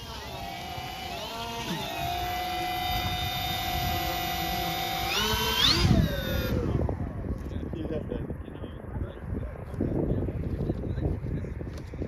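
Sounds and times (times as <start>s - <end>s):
electric motors whining: 0.0s - 7.2s.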